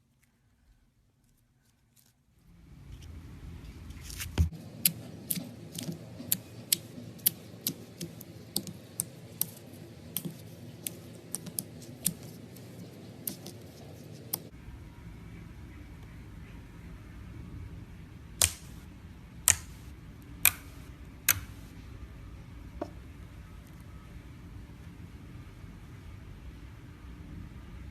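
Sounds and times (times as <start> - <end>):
slime squishing: 3.9 - 14.5
slime clicking pops: 18.4 - 18.8, 19.5 - 19.8.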